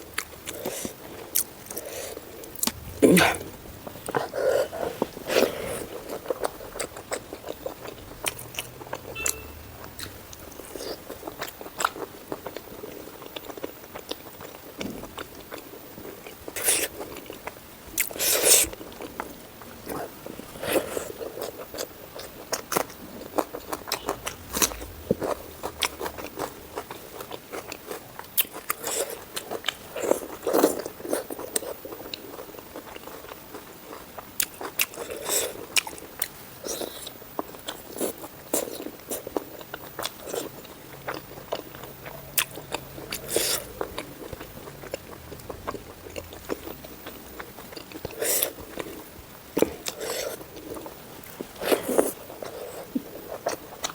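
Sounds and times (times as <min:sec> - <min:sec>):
person biting and chewing: 0:22.2 - 0:31.7, 0:39.9 - 0:46.4.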